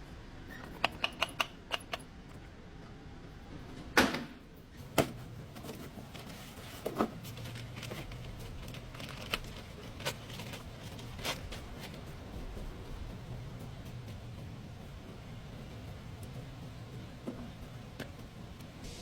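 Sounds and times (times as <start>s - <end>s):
low steady hum: 0.0s - 19.0s
metal tools knocking and clicking: 0.6s - 2.1s.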